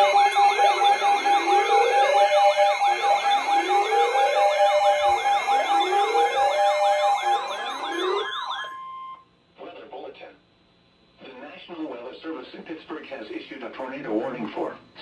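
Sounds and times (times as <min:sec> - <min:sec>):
steady pulsing tone: 0:00.0 - 0:08.6
electronic sirens yelping: 0:00.0 - 0:09.2
siren wails: 0:00.0 - 0:09.2.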